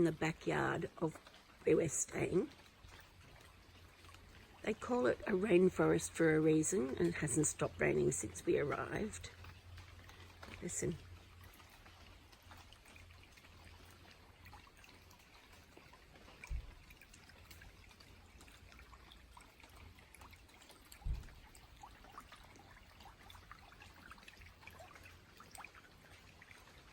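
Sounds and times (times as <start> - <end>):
water drips and trickling: 0.0 - 26.9
dull low thumps: 21.0 - 21.4.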